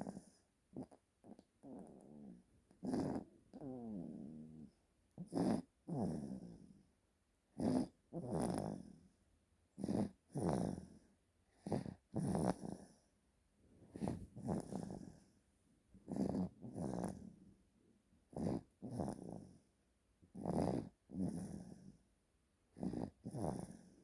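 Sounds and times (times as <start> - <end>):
baby snoring loudly: 5.2 - 6.4, 9.8 - 10.8, 14.0 - 15.0, 16.1 - 17.2, 18.3 - 19.4, 20.4 - 21.5, 22.8 - 23.8.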